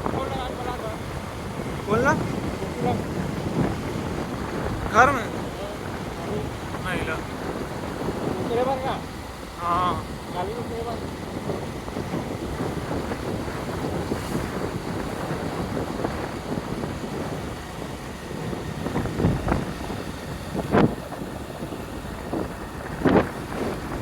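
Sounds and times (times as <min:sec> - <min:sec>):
wind rushing over microphone: 0:00.0 - 0:24.0.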